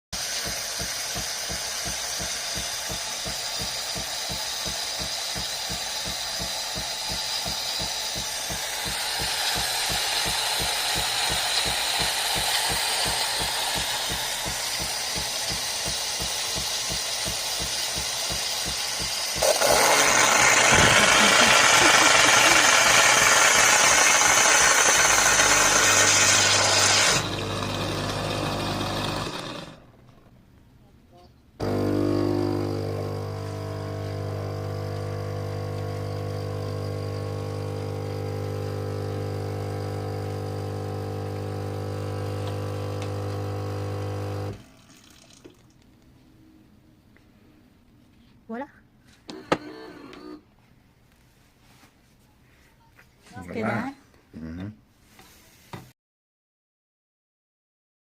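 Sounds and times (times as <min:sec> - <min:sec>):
loud rushing hiss: 0:00.2 - 0:27.3
coffee machine humming and rattling: 0:00.2 - 0:30.0, 0:31.6 - 0:45.7.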